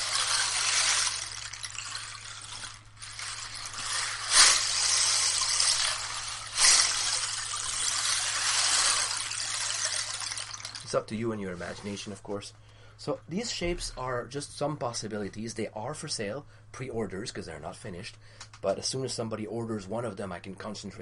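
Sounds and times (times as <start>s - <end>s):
rainstick rushing: 0.0s - 11.1s.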